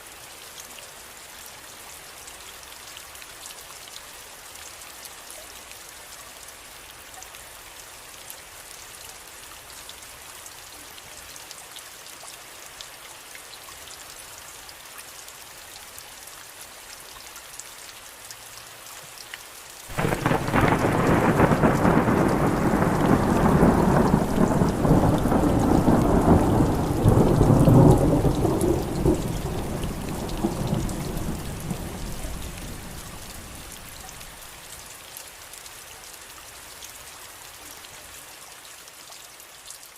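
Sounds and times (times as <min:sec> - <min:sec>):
steady rain falling: 0:00.0 - 0:39.9
thunder clap and rumble: 0:19.9 - 0:34.0.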